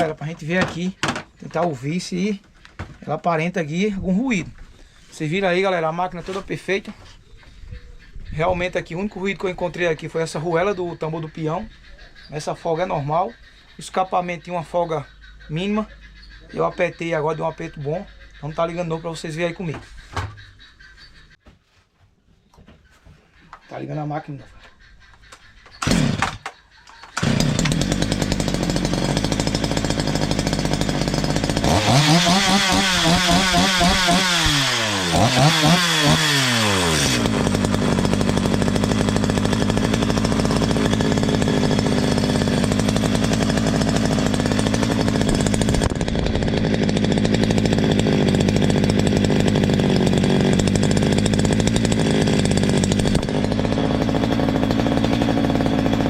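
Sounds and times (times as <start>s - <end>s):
chainsaw engine idling and revving: 0.0s - 2.2s, 8.6s - 11.2s, 25.8s - 56.0s.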